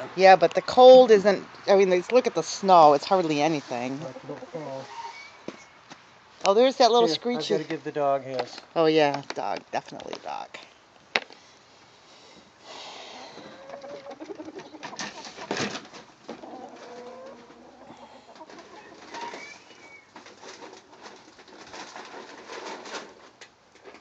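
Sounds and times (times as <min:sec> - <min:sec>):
chickens cooing: 0:12.8 - 0:15.6, 0:16.2 - 0:20.9.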